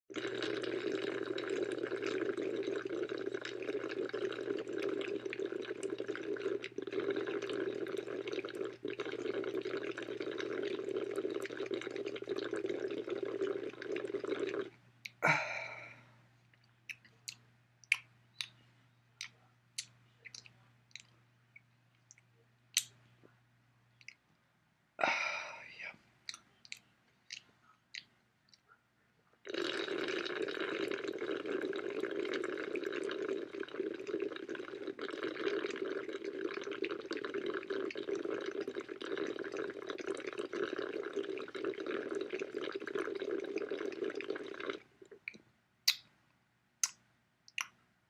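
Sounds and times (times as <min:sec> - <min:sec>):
small clicks or drips: 0:19.2 - 0:23.0, 0:44.6 - 0:46.2, 0:46.8 - 0:47.8.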